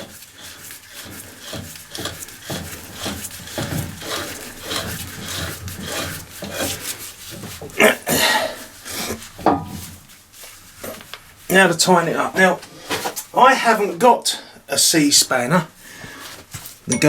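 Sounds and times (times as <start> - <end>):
metal ring scraping on thread: 0.0 - 7.8.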